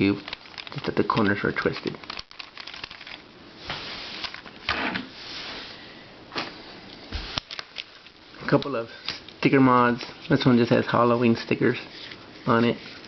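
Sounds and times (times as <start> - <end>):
plastic puzzle scraping: 0.0 - 4.6, 11.7 - 13.0.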